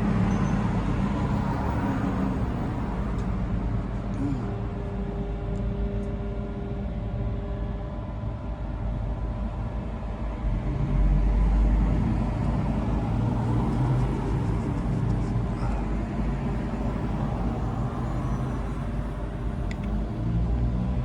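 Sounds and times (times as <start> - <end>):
road noise: 0.0 - 6.0, 10.5 - 21.0
vehicle engine hum: 0.0 - 7.6, 9.4 - 21.0.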